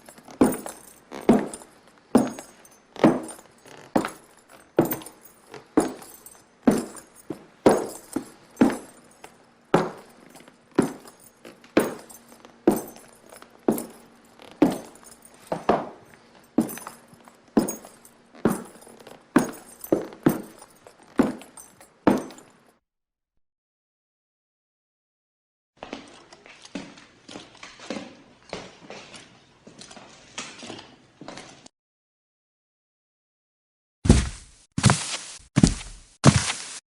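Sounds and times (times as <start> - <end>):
footsteps crunching: 0.0 - 22.5, 34.1 - 36.8.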